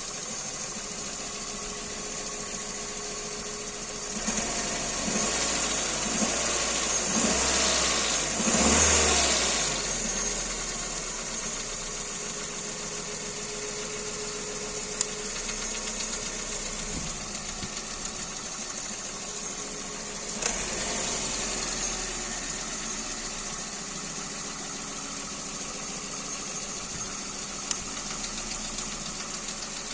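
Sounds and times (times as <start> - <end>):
engine idling with knock: 0.0 - 7.5, 9.9 - 29.9
car engine revving: 4.1 - 11.6, 19.8 - 29.9
sharp clicks: 27.6 - 28.1.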